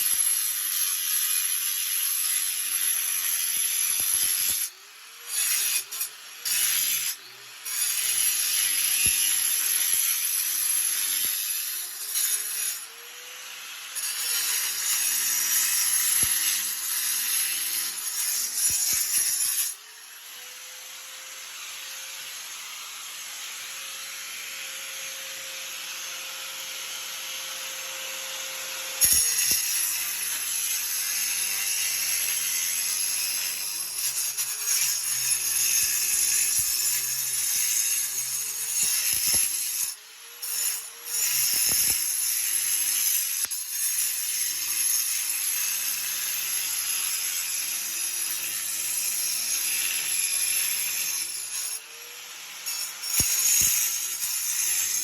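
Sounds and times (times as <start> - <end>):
power tool motor cutting: 0.0 - 55.0.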